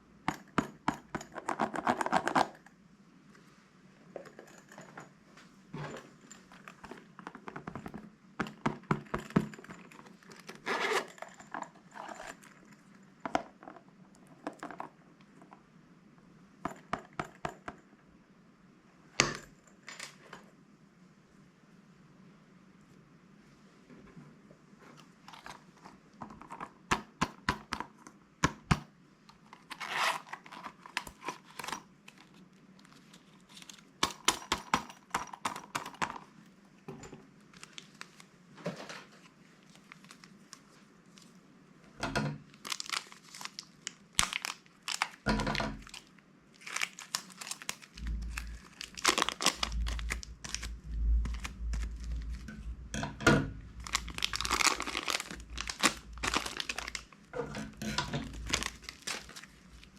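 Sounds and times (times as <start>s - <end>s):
plastic bags crinkling: 42.4s - 59.9s.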